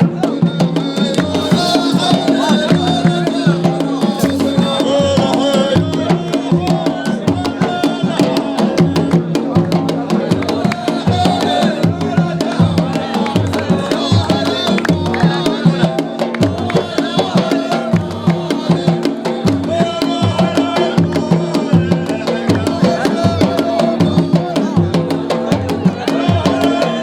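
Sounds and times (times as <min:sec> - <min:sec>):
busy steady drum beat: 0:00.0 - 0:27.0.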